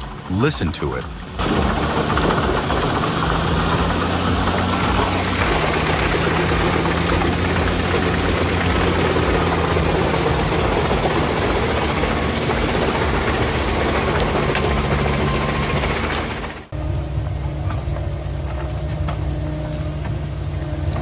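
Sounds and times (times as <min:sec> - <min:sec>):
wood chipper engine under heavy load: 0:01.4 - 0:21.0.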